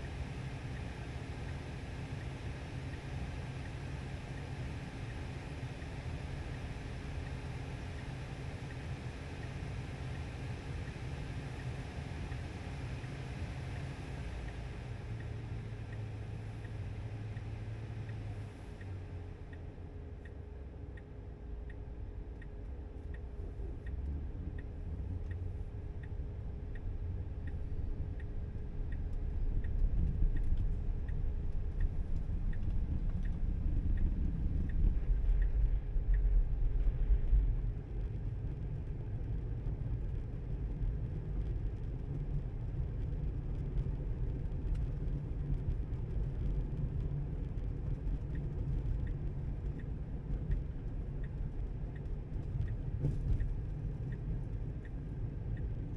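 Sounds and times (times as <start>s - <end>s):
turn signal ticking: 14.5s - 36.6s, 45.9s - 55.9s
road and tyre rumble: 21.7s - 55.9s.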